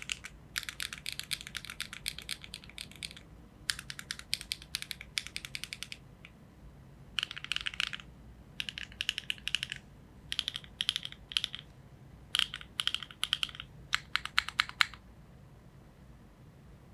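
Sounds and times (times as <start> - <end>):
typing on mechanical keyboard: 0.0 - 6.0, 7.2 - 11.7, 12.3 - 15.0.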